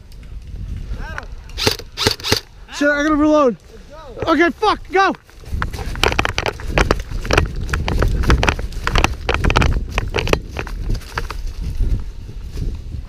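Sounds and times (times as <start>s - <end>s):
wind rumble on microphone: 0.0s - 13.0s
running footsteps: 3.5s - 13.0s
gear jostling: 5.2s - 12.6s.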